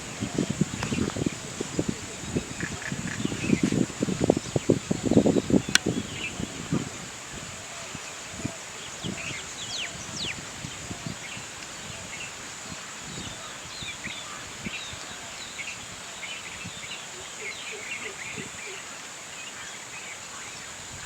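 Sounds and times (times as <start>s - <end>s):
high insect-like hum: 0.0s - 11.2s
small birds chirping: 0.1s - 6.8s.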